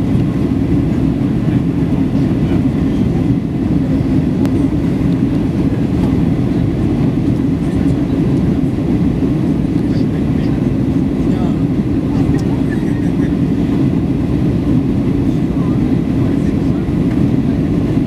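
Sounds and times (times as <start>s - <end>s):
airplane cabin drone: 0.0s - 18.0s.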